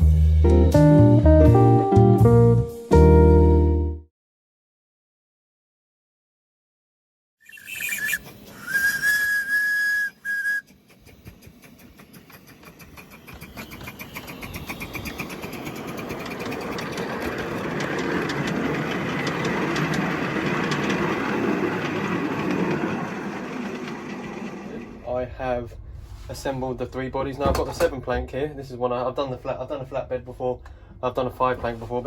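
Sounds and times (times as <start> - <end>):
train whistle blowing: 8.0 - 10.7
train moving off rumbling: 8.1 - 32.0.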